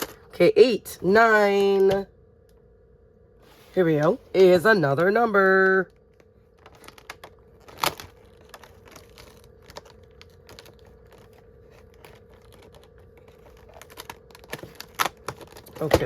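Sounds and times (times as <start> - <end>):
faint steady hum: 0.0 - 16.0
cardboard packaging being opened: 6.6 - 16.0.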